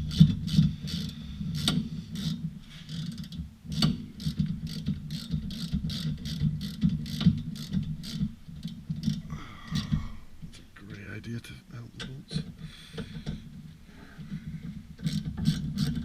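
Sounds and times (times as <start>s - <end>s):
ratchet clicking: 0.0s - 9.2s, 15.0s - 16.0s.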